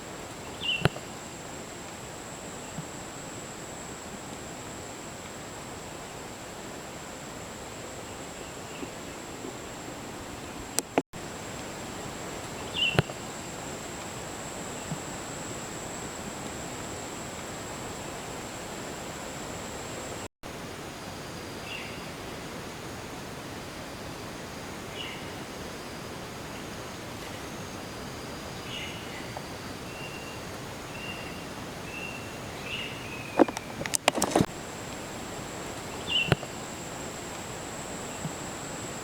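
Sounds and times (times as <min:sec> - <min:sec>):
forest rushing hiss: 0:00.0 - 0:39.0
high-pitched insect whine: 0:00.0 - 0:39.0
bird chirps: 0:12.6 - 0:13.2, 0:35.9 - 0:36.6.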